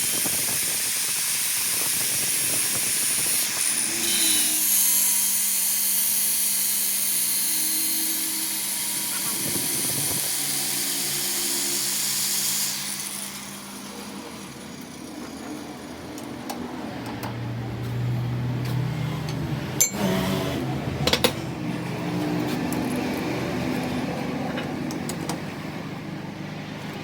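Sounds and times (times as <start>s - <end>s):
power tool hissing: 0.0s - 15.9s
machine motor humming: 7.0s - 27.0s.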